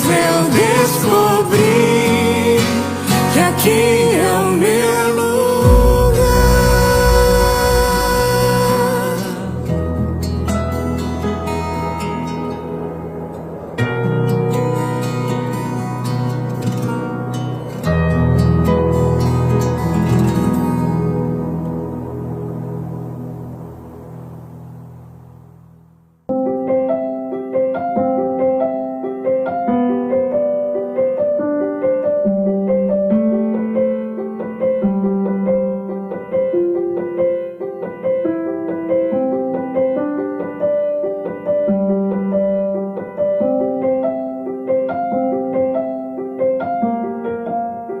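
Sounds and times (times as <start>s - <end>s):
piano music: 0.0s - 48.0s
low drone: 5.4s - 17.8s, 18.7s - 25.7s.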